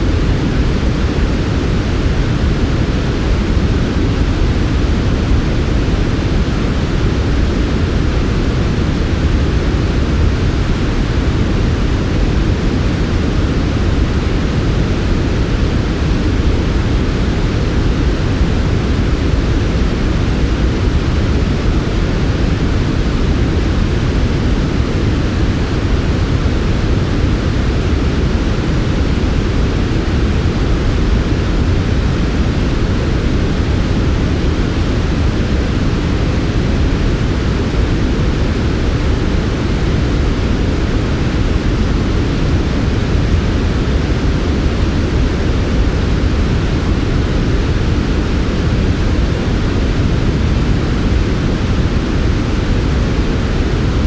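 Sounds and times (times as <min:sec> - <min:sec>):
synthetic white noise: 0:00.0 - 0:54.0.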